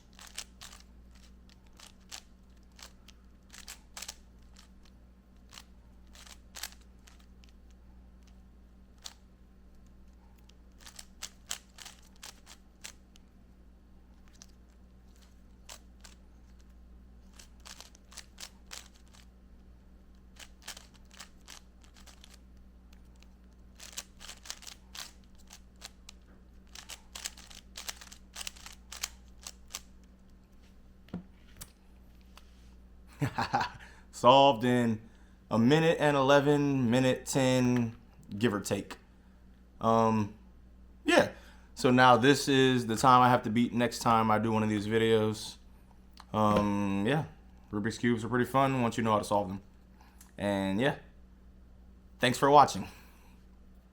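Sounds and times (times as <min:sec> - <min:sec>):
plastic puzzle cube clicking: 0:00.1 - 0:04.7, 0:05.5 - 0:07.6, 0:10.8 - 0:13.0, 0:17.3 - 0:19.3, 0:20.4 - 0:22.4, 0:23.2 - 0:26.1, 0:26.7 - 0:29.9.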